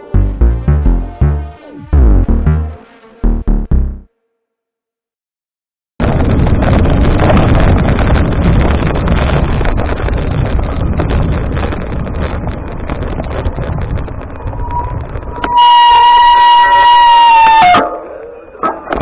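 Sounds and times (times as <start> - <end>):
high brake squeal: 14.5 - 17.6.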